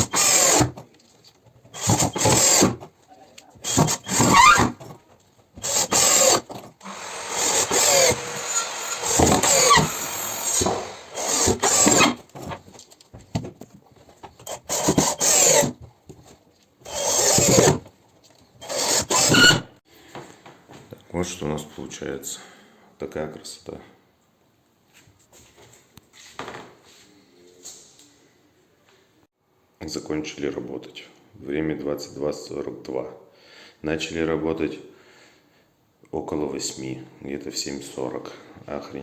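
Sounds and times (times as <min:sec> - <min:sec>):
drill driving screws: 0:00.0 - 0:00.8, 0:01.7 - 0:02.9, 0:03.6 - 0:04.8, 0:05.6 - 0:12.3, 0:14.4 - 0:15.8, 0:16.8 - 0:17.8, 0:18.6 - 0:19.6
grinding: 0:05.6 - 0:12.5.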